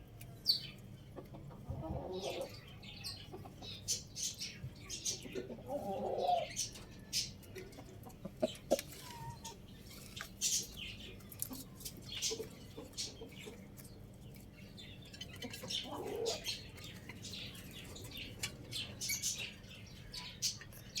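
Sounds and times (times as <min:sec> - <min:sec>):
small birds chirping: 0:00.2 - 0:21.0.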